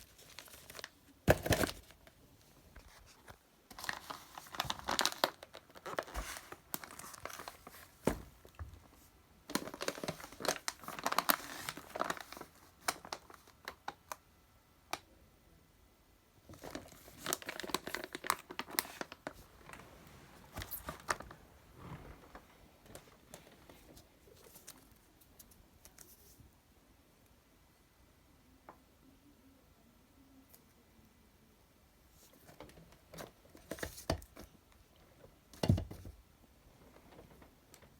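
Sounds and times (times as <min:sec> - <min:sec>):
plastic packaging crinkling: 0:00.0 - 0:02.2, 0:03.0 - 0:14.2, 0:16.5 - 0:26.4.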